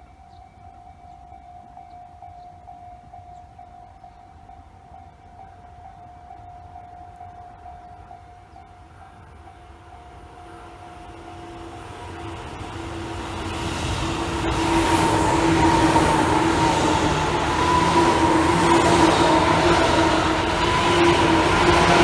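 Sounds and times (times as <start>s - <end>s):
train wheels rumbling on rails: 8.7s - 22.0s
steady humming tones: 9.2s - 22.0s.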